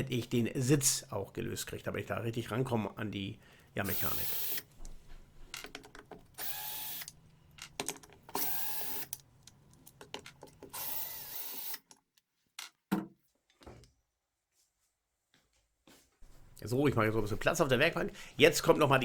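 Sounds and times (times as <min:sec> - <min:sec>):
cordless screwdriver whirring: 0:03.9 - 0:04.7, 0:06.4 - 0:07.2, 0:08.3 - 0:09.2, 0:10.6 - 0:11.9.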